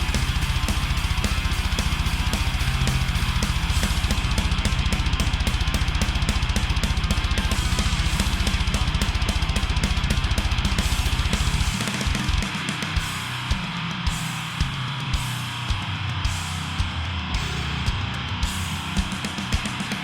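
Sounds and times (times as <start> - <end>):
double bass drumming: 0.0 - 13.1
distorted electric guitar: 0.0 - 20.0.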